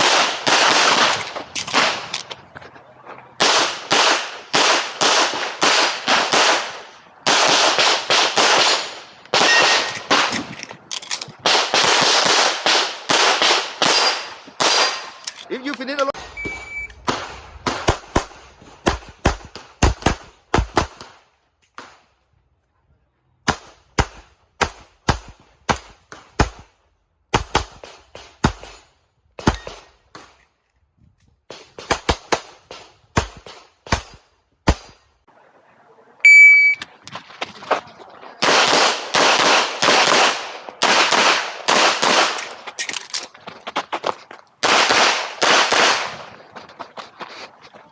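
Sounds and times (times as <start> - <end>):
short electronic beep: 16.3 - 17.0, 36.2 - 36.8.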